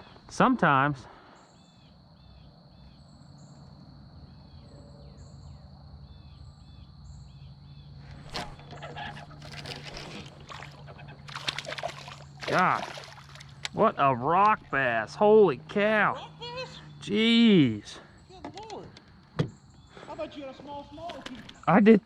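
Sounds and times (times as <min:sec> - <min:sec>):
songbird chirping: 0:00.0 - 0:22.0
rustling: 0:08.0 - 0:13.7
splashing: 0:08.1 - 0:15.9.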